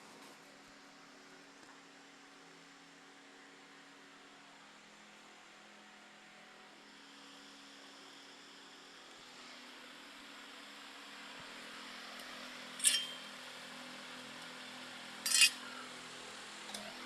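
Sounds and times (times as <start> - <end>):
ceiling fan motor hum: 0.0 - 17.0.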